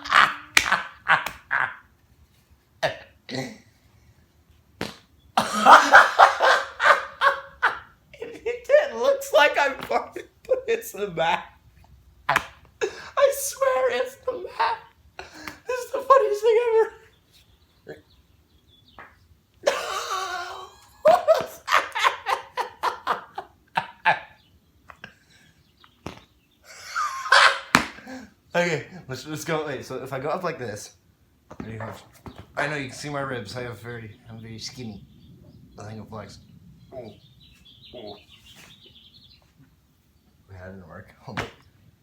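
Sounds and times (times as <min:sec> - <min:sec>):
quick laughter: 0:26.7 - 0:28.2.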